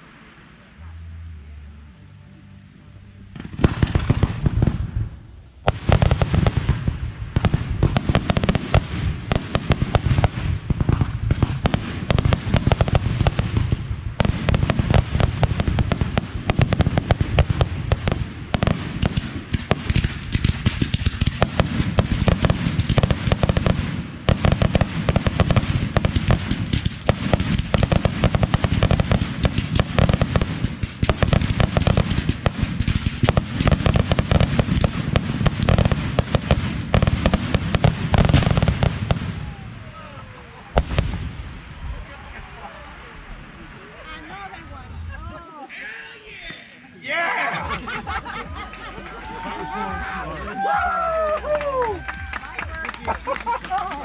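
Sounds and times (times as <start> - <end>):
fireworks crackling: 3.2 - 47.0, 47.6 - 54.0
fireworks bangs: 3.3 - 45.2.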